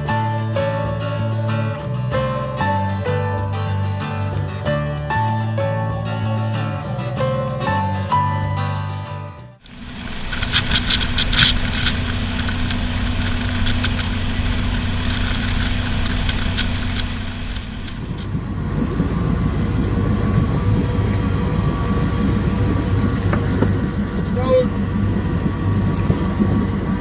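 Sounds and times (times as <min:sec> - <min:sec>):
jet boat engine running: 0:09.6 - 0:27.0.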